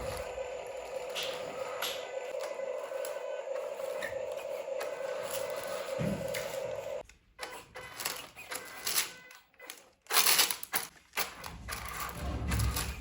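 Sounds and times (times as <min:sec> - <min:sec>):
small electric motor whining: 0:00.0 - 0:13.0
small parts clicking and rattling: 0:07.4 - 0:13.0.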